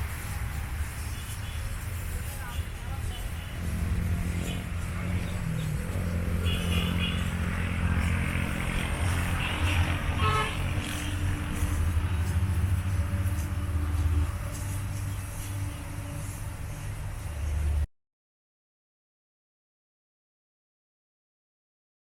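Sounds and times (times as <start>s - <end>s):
engine humming: 1.8s - 17.8s
horn toot: 6.3s - 7.6s, 9.0s - 11.2s.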